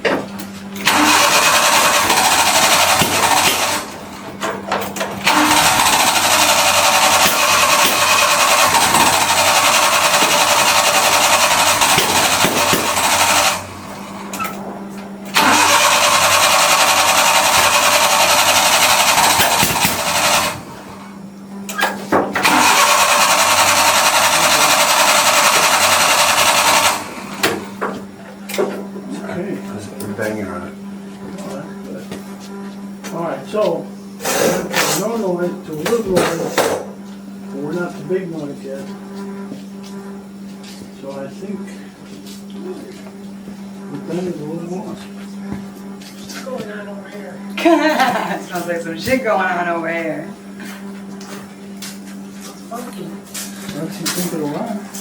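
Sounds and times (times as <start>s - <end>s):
engine cranking on starter: 0.8s - 14.5s, 15.3s - 20.9s, 22.4s - 27.8s.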